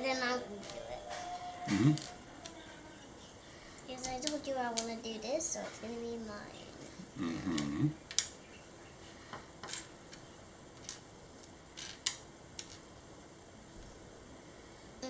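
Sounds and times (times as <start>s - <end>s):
plastic pieces clicking and tapping: 4.1s - 5.0s, 7.6s - 8.4s, 10.8s - 12.9s.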